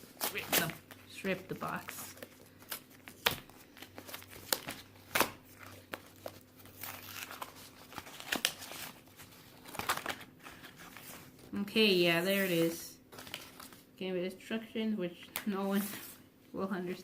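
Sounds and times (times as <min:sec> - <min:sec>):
packaging crinkling: 0:01.7 - 0:11.4.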